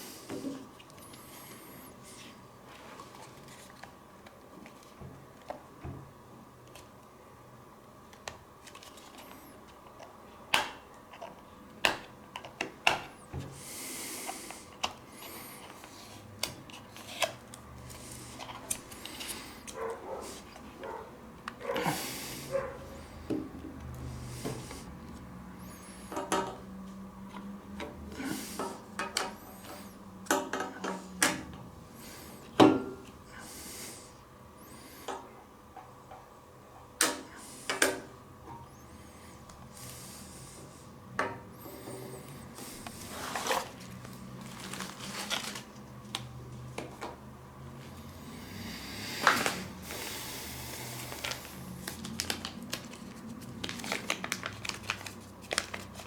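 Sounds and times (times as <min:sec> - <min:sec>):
packaging rustling: 0:42.8 - 0:46.3, 0:49.2 - 0:56.0.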